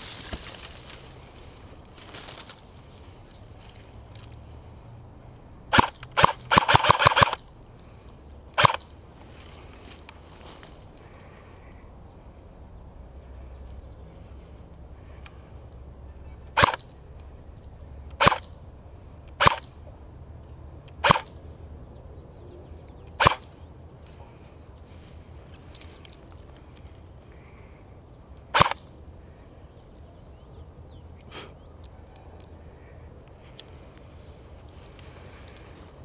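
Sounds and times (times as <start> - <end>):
airsoft gun shots: 5.7 - 7.4, 8.6 - 8.8, 16.6 - 16.8, 18.2 - 18.4, 19.4 - 19.7, 21.0 - 21.3, 23.2 - 23.5, 28.5 - 28.8.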